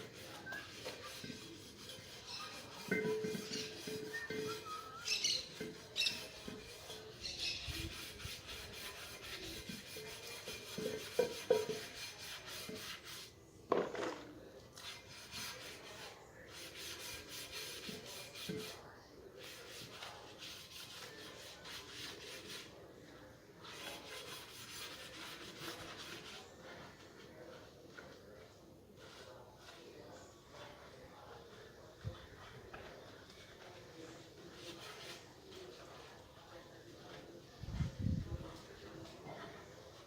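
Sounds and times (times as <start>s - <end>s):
rapid rubbing or rasping strokes: 0.0s - 13.3s, 14.8s - 18.8s, 19.4s - 22.8s, 23.6s - 27.2s, 34.4s - 36.1s.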